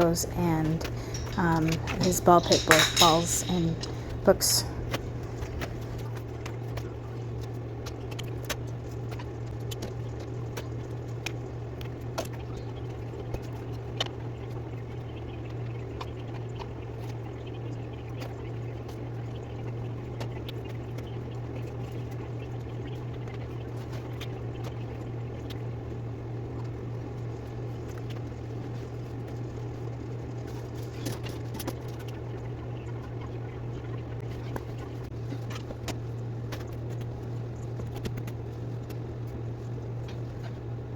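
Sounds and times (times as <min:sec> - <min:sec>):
clicks and knocks of objects: 0:00.0 - 0:06.1
steady low hum: 0:00.0 - 0:06.5.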